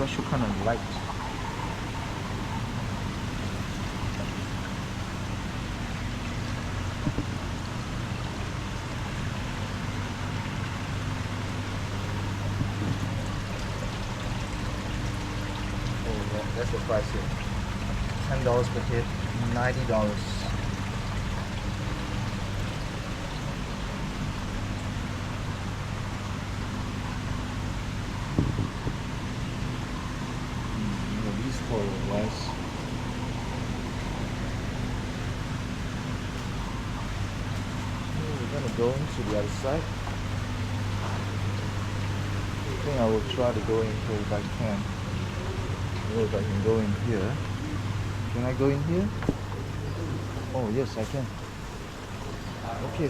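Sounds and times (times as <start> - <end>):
low pump hum: 0.0 - 53.0
rushing circulating water: 0.0 - 53.0
low thump: 28.3 - 29.0
light knock: 28.4 - 29.0.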